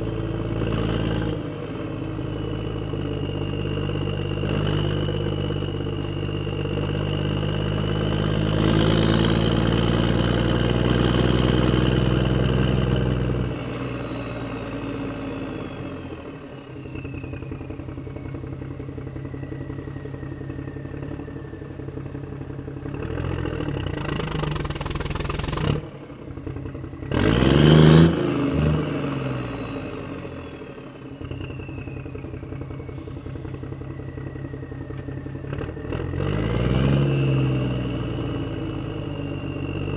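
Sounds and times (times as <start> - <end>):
clatter bursts: 24.4 - 25.8
toy excavator motors whining: 24.5 - 25.7.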